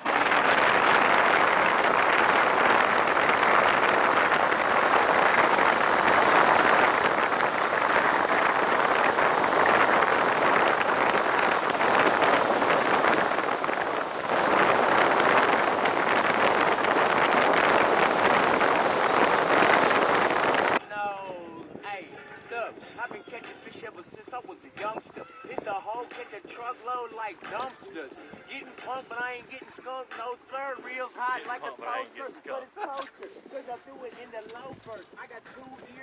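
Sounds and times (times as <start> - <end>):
boat hull on water: 0.0 - 20.8
wind rushing over microphone: 0.0 - 20.8.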